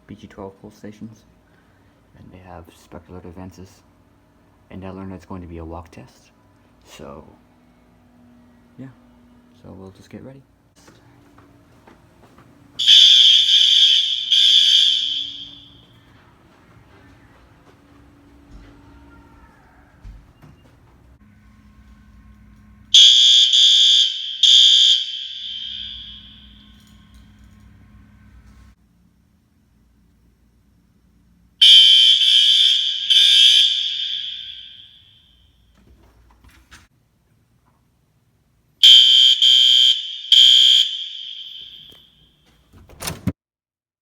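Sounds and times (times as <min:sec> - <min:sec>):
fire alarm horn blasts: 0:12.8 - 0:16.0, 0:21.2 - 0:27.6, 0:31.6 - 0:35.7, 0:38.8 - 0:42.4.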